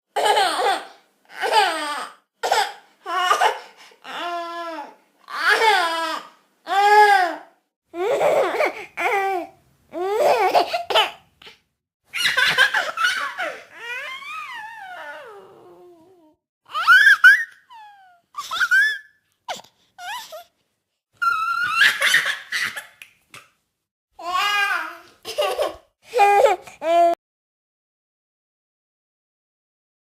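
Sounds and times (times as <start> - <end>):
baby laughing: 12.1 - 15.3, 16.7 - 20.4, 21.2 - 23.0, 25.2 - 26.8.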